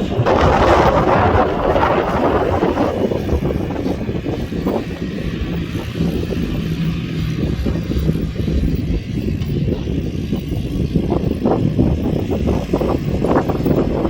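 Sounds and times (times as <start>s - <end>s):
quad bike engine rumbling: 0.0s - 14.0s.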